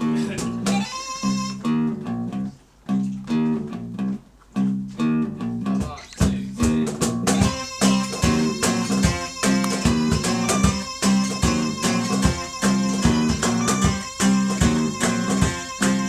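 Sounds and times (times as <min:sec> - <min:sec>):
acoustic guitar strumming: 0:00.0 - 0:16.0
low percussive thumps: 0:05.8 - 0:16.0.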